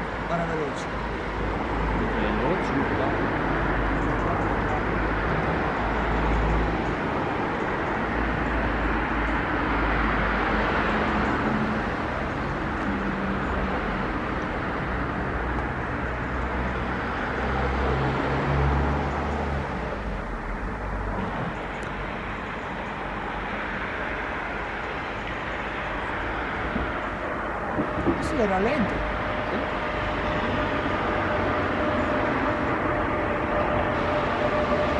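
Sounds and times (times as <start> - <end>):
train rumbling past: 0.0 - 34.9
low motor tones: 20.0 - 34.9.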